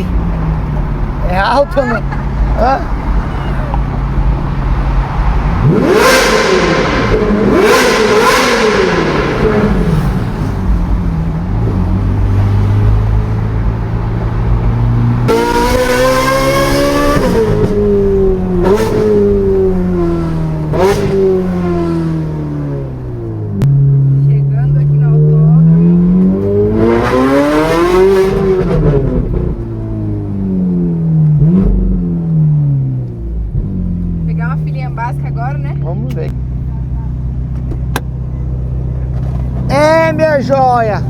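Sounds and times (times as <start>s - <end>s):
loud engine revving: 2.4s - 24.1s, 24.7s - 34.4s.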